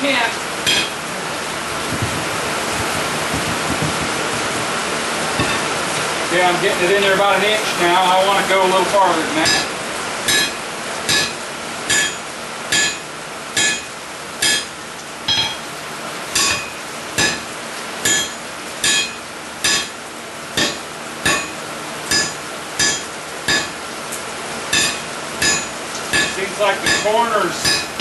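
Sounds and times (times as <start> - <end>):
hammer striking steel: 0.6 - 1.0, 5.4 - 5.7, 9.4 - 9.7, 10.3 - 15.7, 16.4 - 20.0, 20.6 - 23.8, 24.7 - 28.0.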